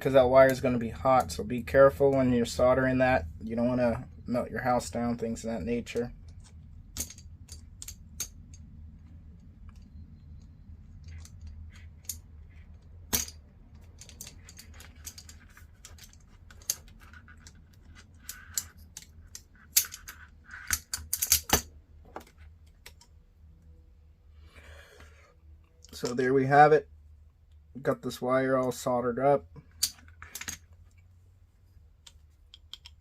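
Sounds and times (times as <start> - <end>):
low steady hum: 0.0 - 33.0
small tools clicking: 9.6 - 21.6.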